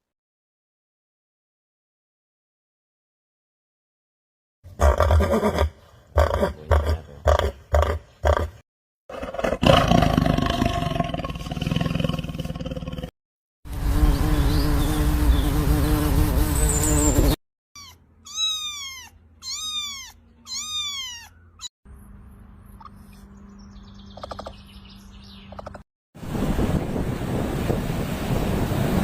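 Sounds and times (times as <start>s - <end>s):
cat meowing: 17.8s - 21.7s.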